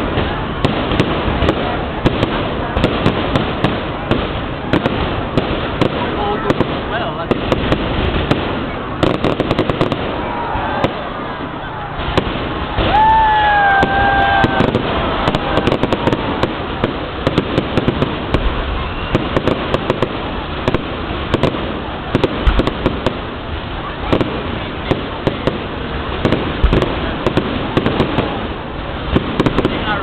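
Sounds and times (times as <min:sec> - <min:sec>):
fireworks bangs: 0:00.0 - 0:30.0
fireworks crackling and popping: 0:00.0 - 0:30.0
falling firework whistle: 0:08.6 - 0:21.5.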